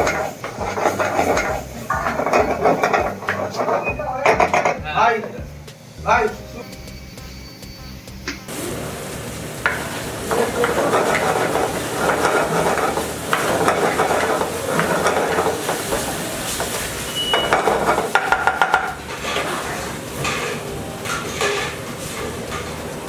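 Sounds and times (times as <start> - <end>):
dumplings sizzling in a pan: 0.0 - 3.8, 8.5 - 23.0
metal spatula scraping pan: 0.0 - 4.8, 9.6 - 23.0.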